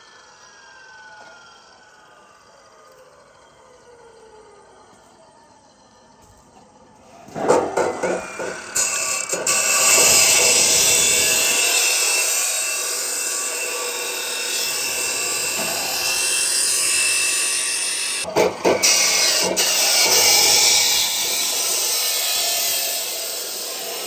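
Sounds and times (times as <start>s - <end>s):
knocks: 7.3s - 11.8s, 18.3s - 20.4s
angle grinder grinding metal: 7.3s - 24.0s.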